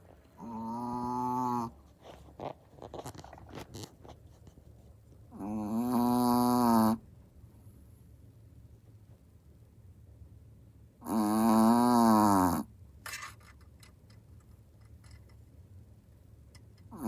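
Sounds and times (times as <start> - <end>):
dog snoring: 0.4 - 1.8, 5.3 - 7.0, 11.0 - 12.7.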